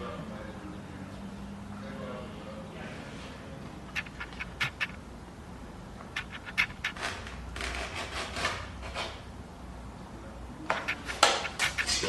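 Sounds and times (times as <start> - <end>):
knife scratching veneer: 3.9 - 5.0, 6.1 - 8.7, 10.8 - 12.0.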